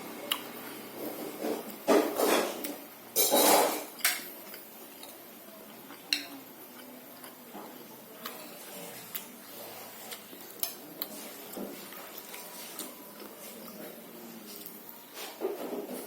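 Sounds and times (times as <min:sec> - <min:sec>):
cutlery clinking on a dish: 0:03.2 - 0:04.3.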